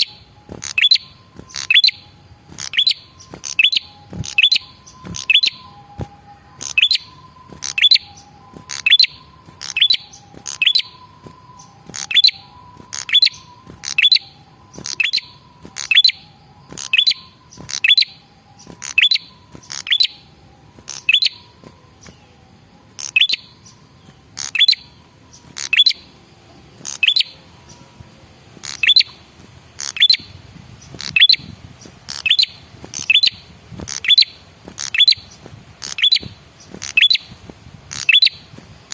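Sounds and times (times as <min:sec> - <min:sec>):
low whistled tones: 0:00.0 - 0:28.2
bird chirping: 0:00.0 - 0:38.9.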